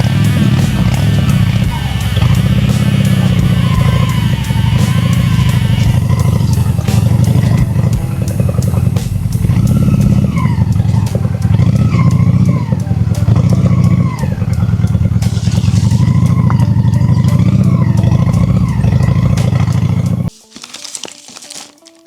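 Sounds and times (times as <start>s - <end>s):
motorcycle engine revving: 0.0s - 20.7s.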